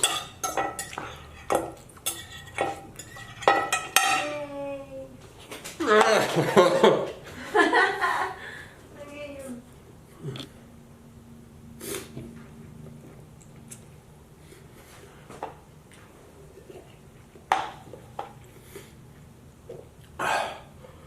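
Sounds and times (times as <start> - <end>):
utensils clinking on plate: 0.0 - 4.4.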